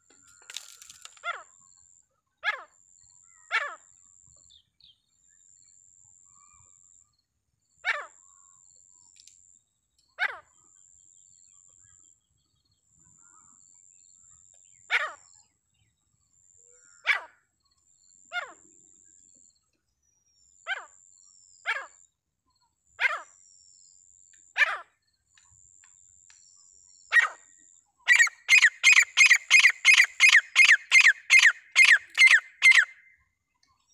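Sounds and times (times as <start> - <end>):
partridge calling: 28.1 - 33.1.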